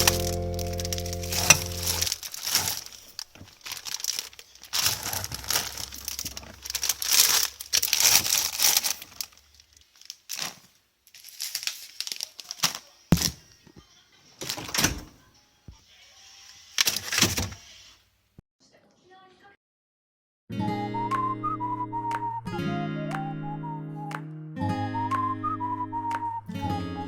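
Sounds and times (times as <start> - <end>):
crinkling and rustling handling: 0.0 - 15.2, 16.8 - 17.7.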